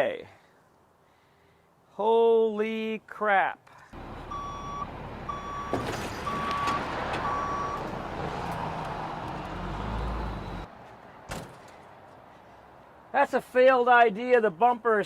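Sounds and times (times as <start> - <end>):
truck engine running: 4.0 - 10.6
reverse alarm beeping: 4.2 - 7.8.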